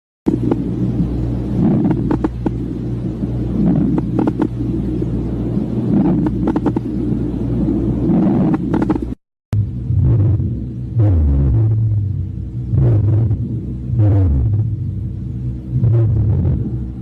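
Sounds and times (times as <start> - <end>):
short crackling clicks: 1.7 - 2.6.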